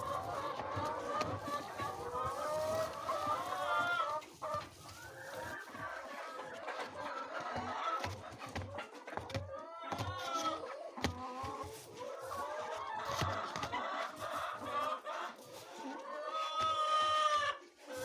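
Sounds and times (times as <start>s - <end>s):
hens clucking: 0.0s - 18.0s.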